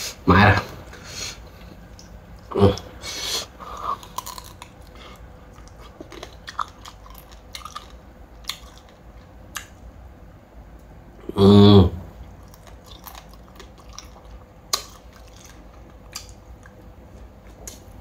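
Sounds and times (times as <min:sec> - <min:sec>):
person chewing and crunching food: 0:01.4 - 0:09.8, 0:12.2 - 0:18.0.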